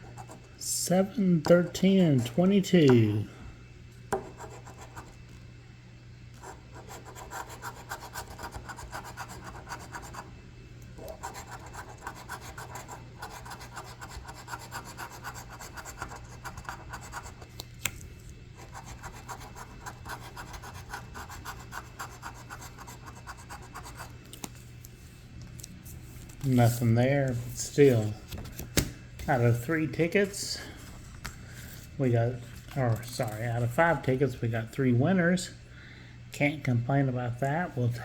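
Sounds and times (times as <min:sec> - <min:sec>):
scratching lottery ticket: 0:06.4 - 0:10.3, 0:11.0 - 0:17.5, 0:18.6 - 0:24.2.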